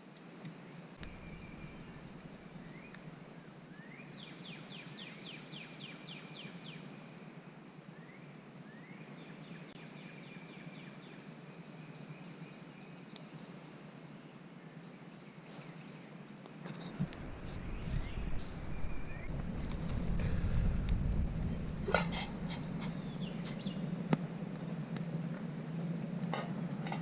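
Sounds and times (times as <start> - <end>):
songbird singing: 0.0 - 19.3, 21.6 - 27.0
faint outdoor hiss: 0.0 - 27.0.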